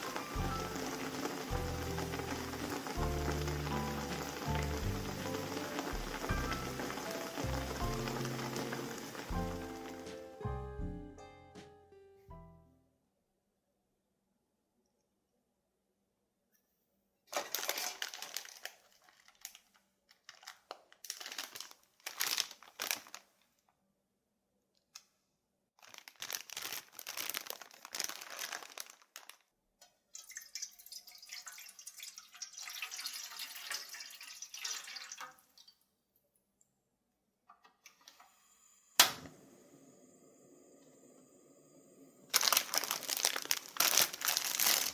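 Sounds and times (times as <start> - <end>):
plastic packaging crinkling and tearing: 0.0 - 10.0, 17.3 - 23.6, 25.8 - 29.6, 42.3 - 44.9.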